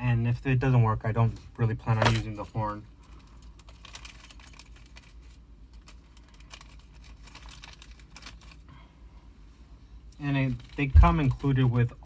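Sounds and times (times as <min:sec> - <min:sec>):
metal parts clinking and rattling: 0:02.0 - 0:08.7.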